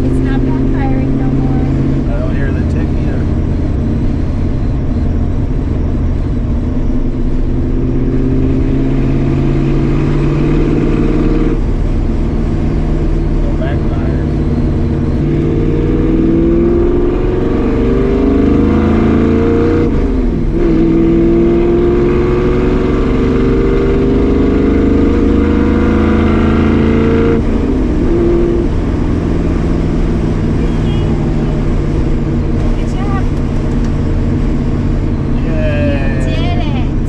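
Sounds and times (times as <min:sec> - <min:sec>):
car engine accelerating: 0:00.0 - 0:37.0.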